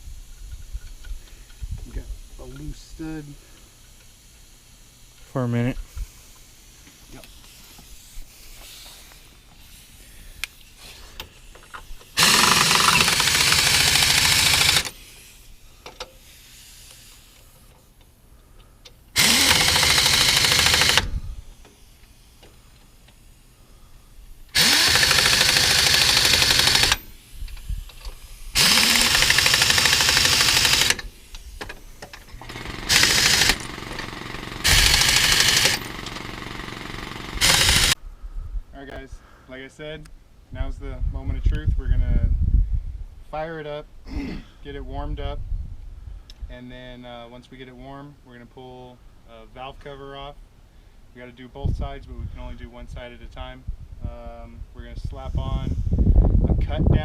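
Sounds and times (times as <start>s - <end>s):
impact wrench bursts: 6.3s - 17.9s, 19.1s - 38.0s.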